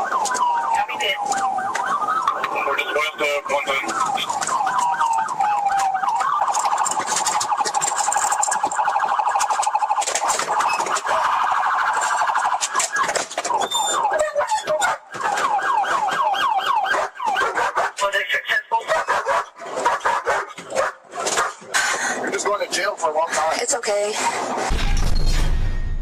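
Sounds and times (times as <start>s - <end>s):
police siren yelp and warble: 0.0s - 24.7s.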